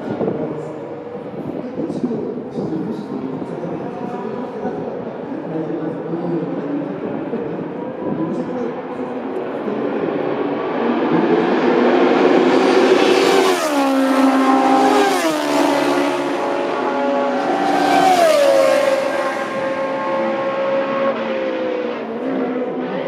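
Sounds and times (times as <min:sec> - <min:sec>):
racing car engines at high revs: 0:08.7 - 0:23.0.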